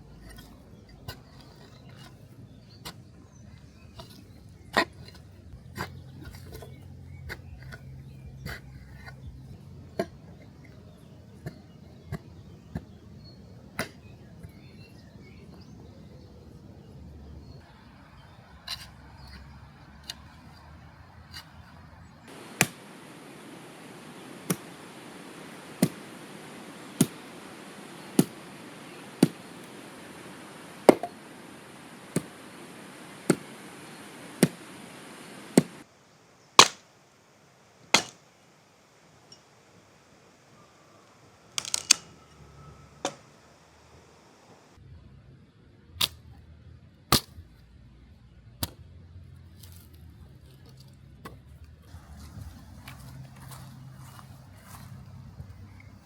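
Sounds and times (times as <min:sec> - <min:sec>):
sharp knocks: 0:22.3 - 0:35.8, 0:38.0 - 0:38.2
steady hiss: 0:22.3 - 0:44.8.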